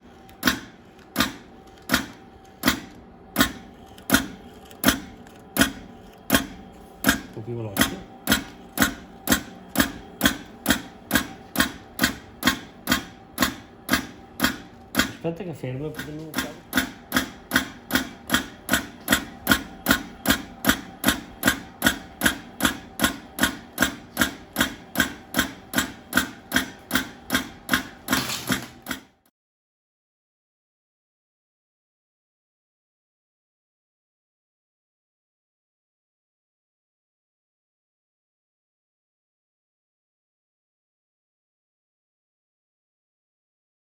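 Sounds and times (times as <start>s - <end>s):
pneumatic cutter cutting strokes: 0.1s - 15.2s, 15.9s - 29.1s.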